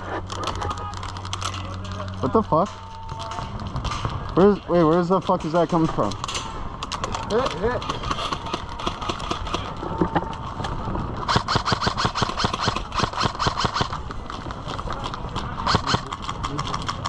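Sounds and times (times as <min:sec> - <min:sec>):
airsoft guns firing: 0:06.9 - 0:09.7, 0:11.2 - 0:17.0.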